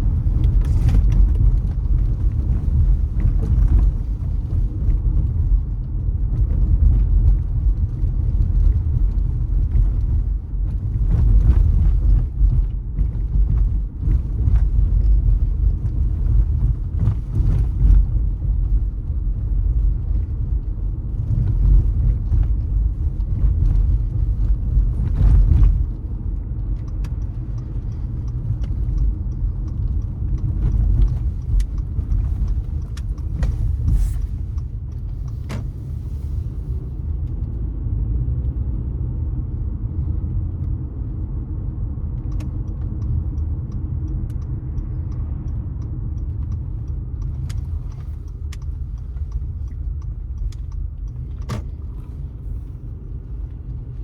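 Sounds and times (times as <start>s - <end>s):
car engine and tyres on road: 0.0s - 54.0s
light even ticking: 25.4s - 35.6s, 42.1s - 54.0s.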